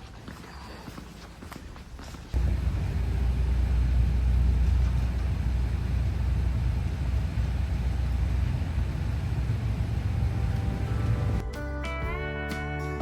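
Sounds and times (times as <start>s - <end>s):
vehicle driving rumble: 2.4s - 11.4s.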